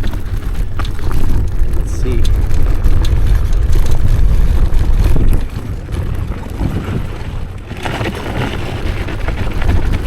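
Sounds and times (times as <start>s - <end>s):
low rumble: 0.0s - 7.6s
tyre and trail noise: 0.0s - 10.0s
wind buffeting microphone: 0.0s - 10.0s.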